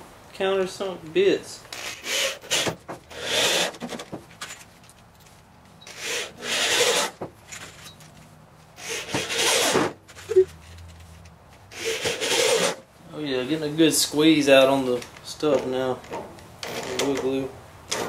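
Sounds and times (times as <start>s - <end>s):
screws driven into wood: 1.7s - 4.2s, 5.9s - 7.8s, 8.8s - 10.4s, 11.7s - 12.8s.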